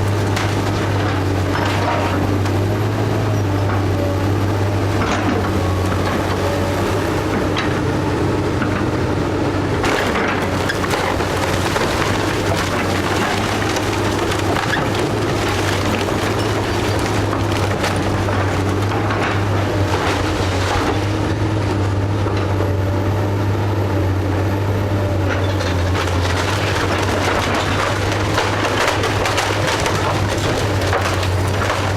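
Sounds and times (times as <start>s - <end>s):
timber cracking and splintering: 0.0s - 2.6s, 9.8s - 21.2s, 25.6s - 31.9s
diesel engine running: 0.0s - 31.9s.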